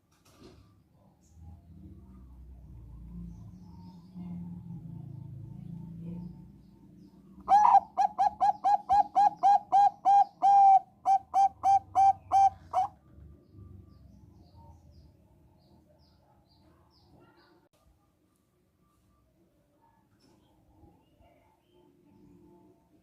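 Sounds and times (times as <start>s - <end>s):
dove cooing: 7.4s - 13.0s.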